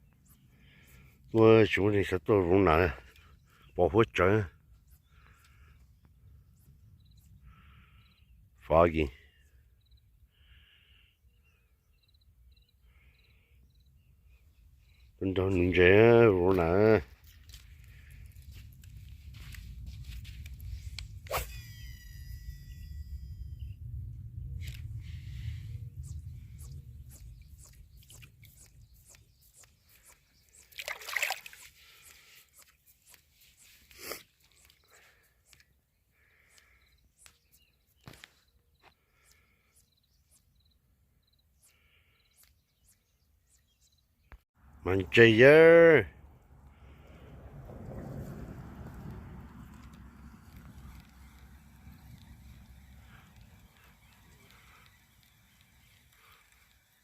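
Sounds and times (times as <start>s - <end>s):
soft high chirps: 20.7s - 23.9s
low rumble: 23.1s - 27.2s, 46.2s - 53.1s
water sloshing: 30.7s - 31.6s
water splash: 30.7s - 31.6s.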